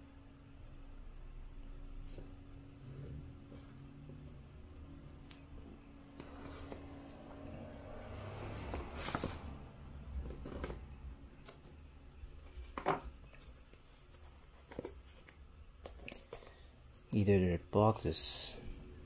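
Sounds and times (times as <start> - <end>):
cardboard box rustling: 8.2 - 11.7.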